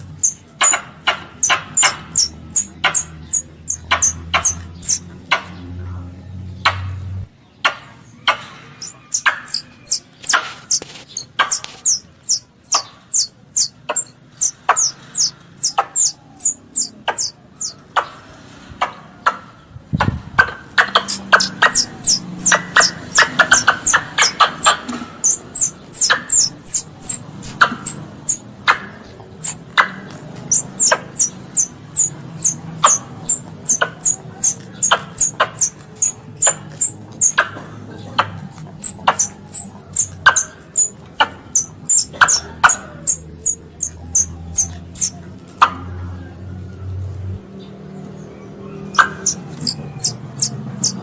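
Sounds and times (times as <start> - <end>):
high-pitched squirrel chirps: 0.0 - 5.3, 8.3 - 17.8, 20.0 - 37.5, 38.2 - 45.2, 48.8 - 51.0.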